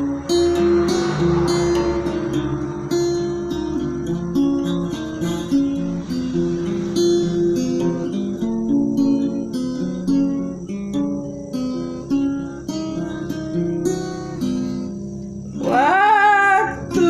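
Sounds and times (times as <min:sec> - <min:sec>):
acoustic guitar strumming chords: 0:00.0 - 0:17.0.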